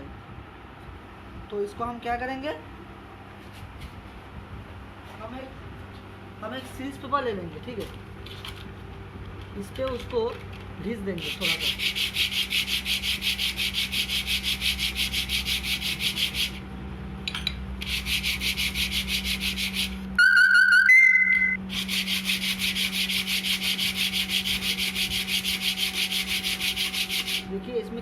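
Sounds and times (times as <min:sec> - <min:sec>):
brake pad rasping on sandpaper: 0:11.2 - 0:16.6, 0:17.8 - 0:20.1, 0:21.7 - 0:27.5
two-note whistle-like tone: 0:20.2 - 0:21.6.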